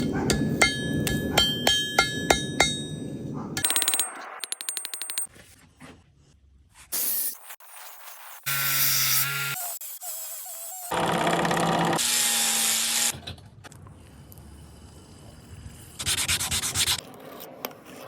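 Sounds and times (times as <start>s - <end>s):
metal clinking: 0.0s - 5.3s.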